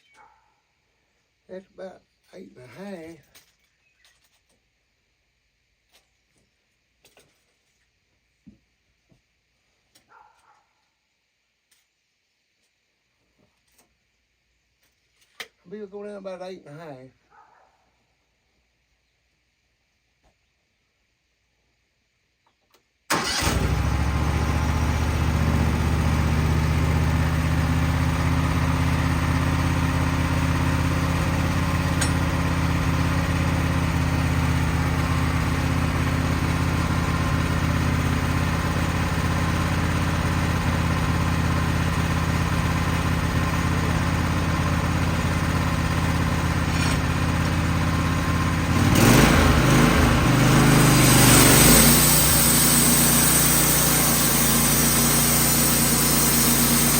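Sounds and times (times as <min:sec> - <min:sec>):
sawmill engine running: 0:23.1 - 0:56.9.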